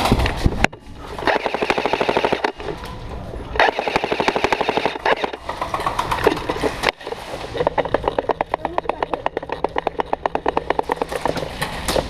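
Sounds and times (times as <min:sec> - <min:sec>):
airsoft gun firing bursts: 0:01.2 - 0:02.7, 0:03.6 - 0:06.7.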